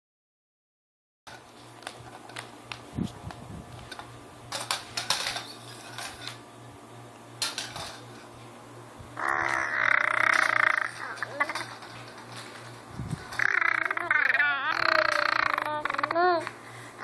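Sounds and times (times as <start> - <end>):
faint steady hum: 1.3 - 17.0
baby crying: 9.2 - 11.6, 13.4 - 16.5
small clicks and rustles: 11.0 - 13.4.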